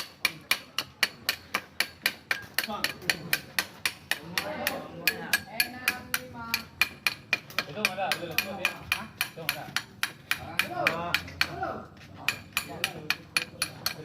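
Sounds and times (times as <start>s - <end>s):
hand hammer striking steel: 0.0s - 14.0s.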